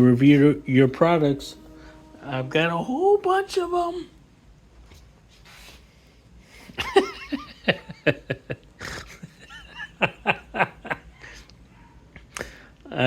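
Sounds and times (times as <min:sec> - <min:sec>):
man chuckling: 0:06.7 - 0:11.3.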